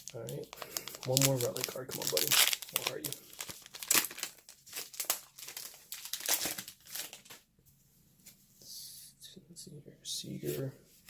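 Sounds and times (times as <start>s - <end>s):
wrapper crinkling and tearing: 0.0s - 7.4s.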